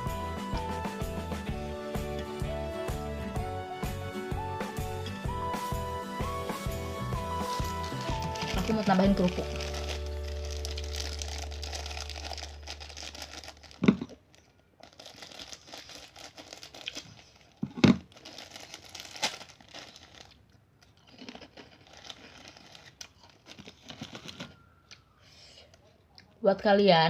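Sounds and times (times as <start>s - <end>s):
plastic packaging crinkling and tearing: 7.2s - 24.7s.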